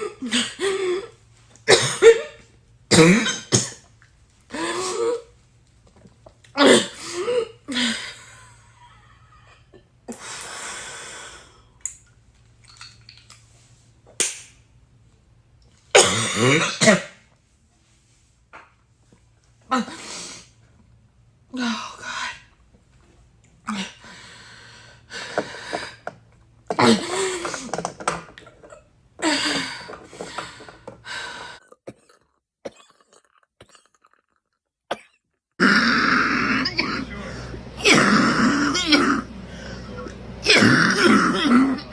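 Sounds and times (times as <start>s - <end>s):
person coughing: 1.7s - 3.9s, 16.0s - 17.2s, 34.9s - 39.3s, 40.4s - 41.9s.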